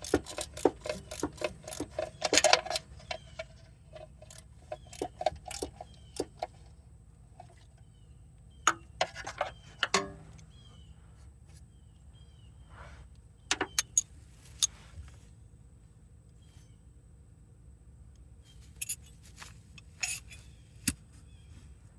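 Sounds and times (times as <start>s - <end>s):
metal tools clinking: 0.0s - 6.6s, 13.5s - 14.7s, 18.6s - 20.6s.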